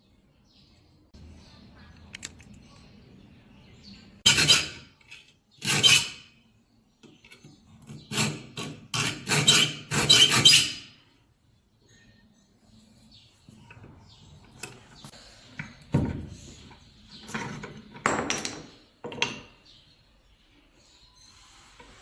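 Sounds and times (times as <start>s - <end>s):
file rasping on saw teeth: 4.3s - 4.9s, 5.6s - 6.3s, 7.9s - 10.9s.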